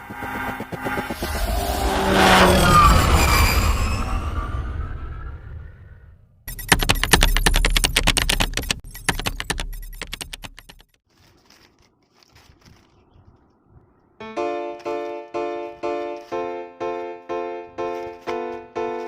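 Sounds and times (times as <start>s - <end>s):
metallic clicks and rattles: 6.5s - 10.9s
faint rustles: 11.1s - 14.1s.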